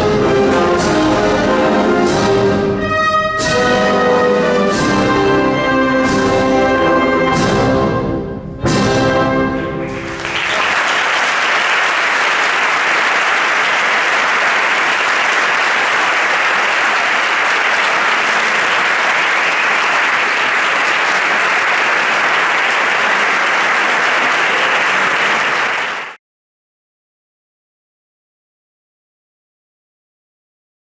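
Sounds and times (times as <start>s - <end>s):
wind band playing march chords: 0.0s - 10.8s
audience applauding: 9.8s - 26.2s.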